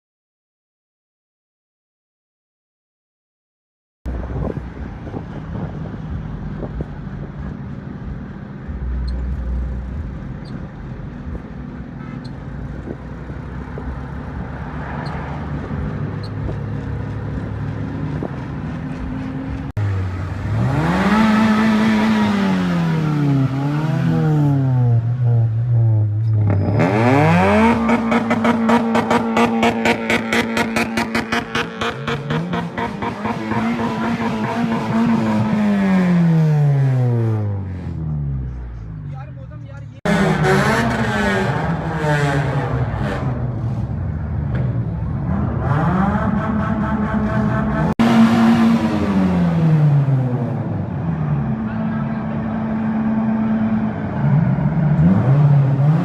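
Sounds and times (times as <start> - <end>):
car engine revving: 4.1 - 38.9, 40.0 - 56.0.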